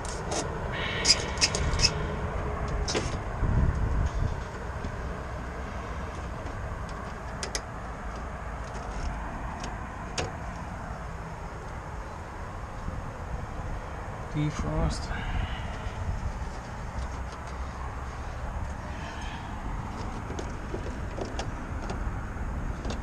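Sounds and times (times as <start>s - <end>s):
low background rumble: 0.0s - 23.0s
tools clicking and knocking: 18.6s - 23.0s.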